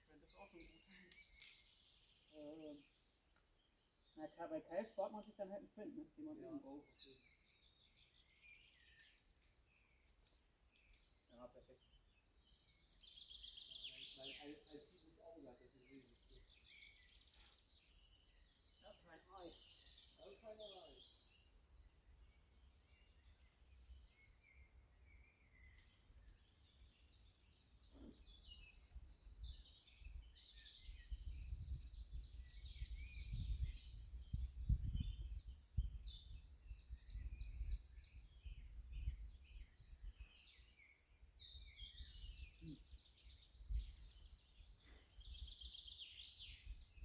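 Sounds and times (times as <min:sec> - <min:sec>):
songbirds singing trills: 0:00.0 - 0:47.0
wind rumble on microphone: 0:29.0 - 0:40.4, 0:43.5 - 0:44.2.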